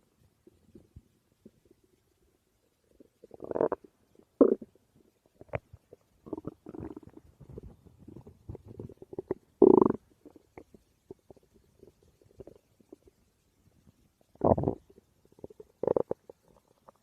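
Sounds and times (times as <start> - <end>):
stomach growling: 2.9 - 13.2, 14.3 - 17.0.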